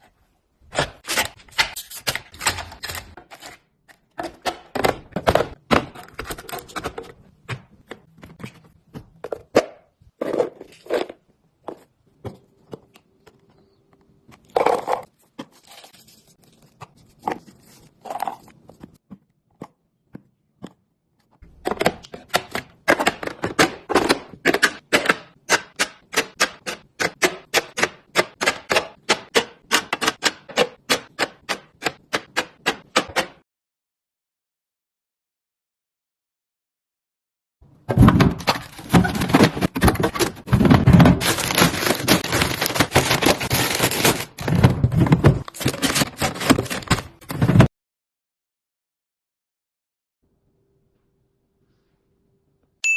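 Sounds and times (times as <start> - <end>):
plastic boxes clicking and knocking: 0.7 - 13.5, 21.4 - 33.4, 37.9 - 47.7
packaging rustle: 38.4 - 47.2.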